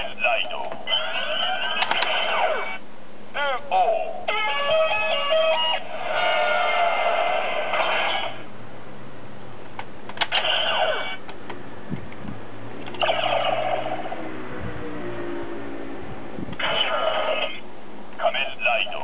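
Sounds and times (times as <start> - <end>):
toy belt electronic sound effects: 0.9 - 2.8, 10.2 - 11.2, 12.9 - 14.2.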